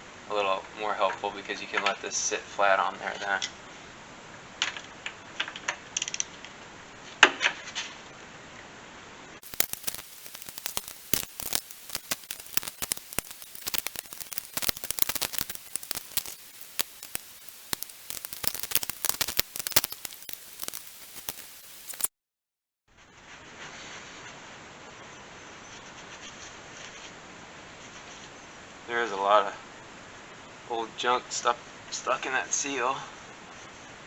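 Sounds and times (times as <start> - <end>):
hand tools clicking and scraping on metal: 9.4 - 22.1.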